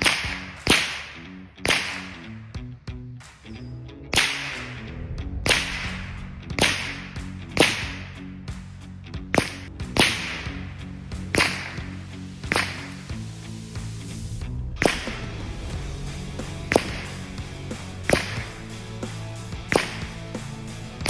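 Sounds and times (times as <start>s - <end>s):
rifle shots cracking: 0.0s - 2.2s, 4.2s - 4.8s, 5.4s - 8.2s, 9.3s - 10.7s, 11.3s - 13.1s, 14.8s - 15.4s, 16.6s - 18.7s, 19.6s - 20.4s.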